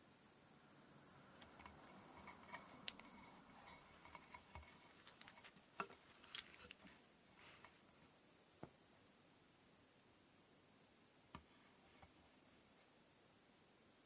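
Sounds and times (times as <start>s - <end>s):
soft thread rustling: 1.1s - 8.8s.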